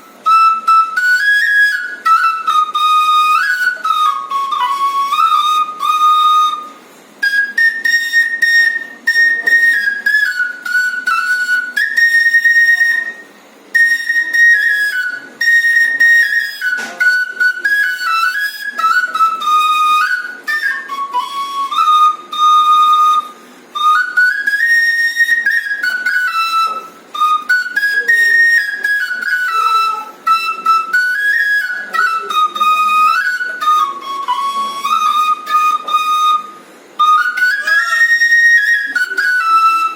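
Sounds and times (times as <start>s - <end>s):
bamboo flute melody: 0.0s - 39.9s.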